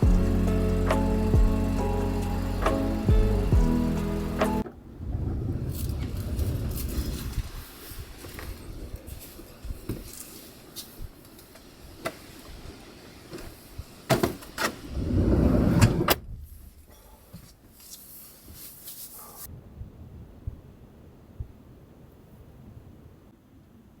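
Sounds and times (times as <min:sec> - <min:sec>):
sliding door rolling shut: 0:00.0 - 0:08.6, 0:11.6 - 0:16.2
outside noise: 0:00.0 - 0:24.0.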